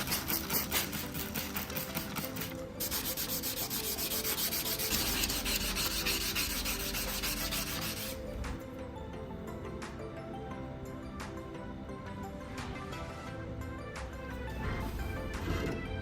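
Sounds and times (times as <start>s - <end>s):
knife blade rubbing on abrasive: 0.0s - 8.2s.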